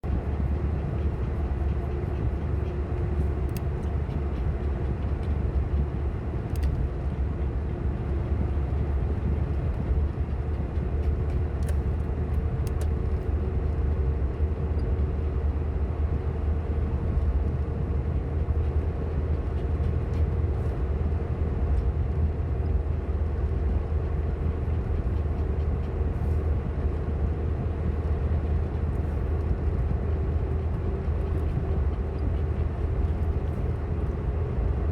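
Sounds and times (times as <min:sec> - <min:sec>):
car interior rumble: 0:00.0 - 0:34.9
faint constant hum: 0:00.0 - 0:34.9
light ticks: 0:00.1 - 0:07.0, 0:09.7 - 0:13.3.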